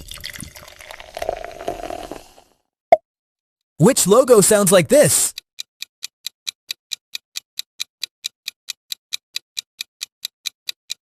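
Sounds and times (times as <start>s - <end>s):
clock-style timer ticking: 4.1s - 11.0s.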